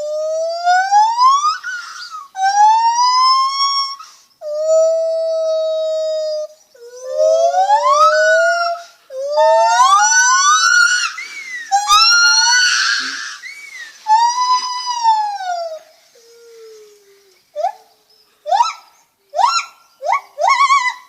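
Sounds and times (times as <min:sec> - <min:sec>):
gibbon hooting and whooping: 0:06.8 - 0:15.8, 0:18.5 - 0:21.0.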